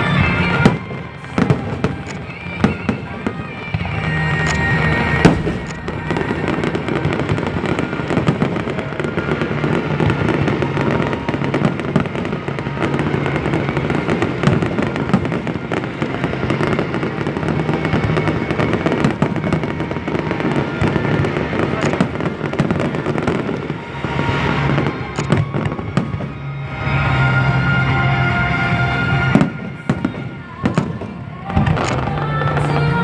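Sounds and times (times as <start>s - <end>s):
fireworks crackling and popping: 0.0s - 33.0s
loud firework bang: 4.5s - 9.4s.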